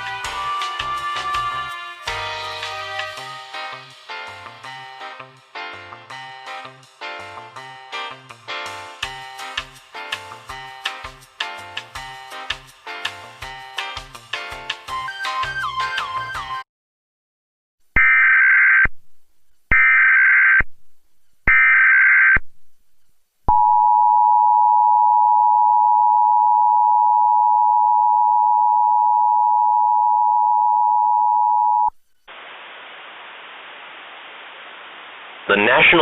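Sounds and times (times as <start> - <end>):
steady hiss: 32.1 - 36.0.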